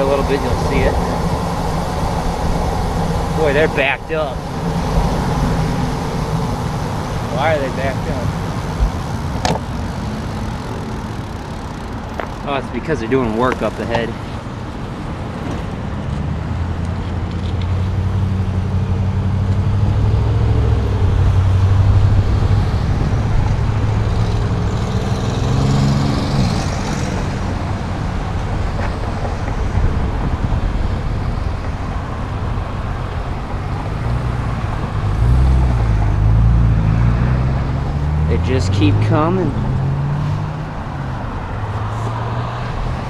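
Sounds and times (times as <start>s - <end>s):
car and truck engines running: 0.0s - 43.0s
steady traffic rush: 0.0s - 43.0s.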